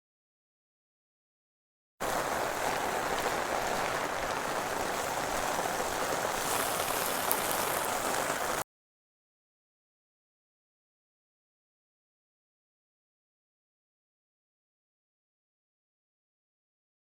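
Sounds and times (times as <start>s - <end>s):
heavy rain falling: 2.0s - 8.6s.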